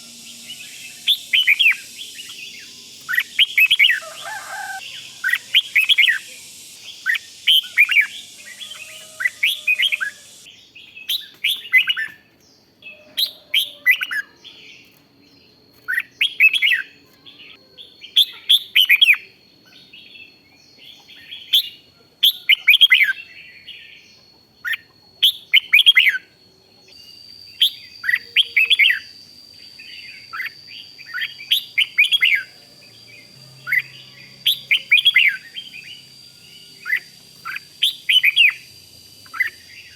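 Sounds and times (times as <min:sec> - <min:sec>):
bulbul song: 0:00.0 - 0:12.1, 0:24.1 - 0:39.9.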